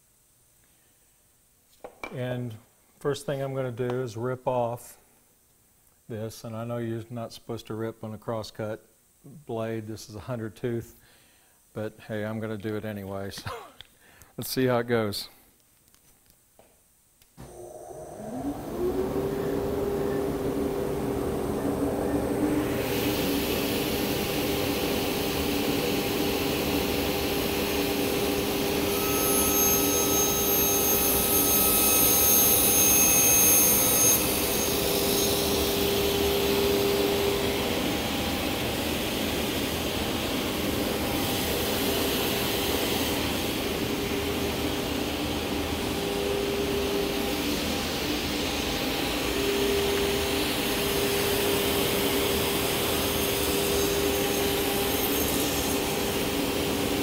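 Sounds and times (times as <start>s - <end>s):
table saw whining: 17.4s - 57.0s
saw blade cutting wood: 52.3s - 56.4s.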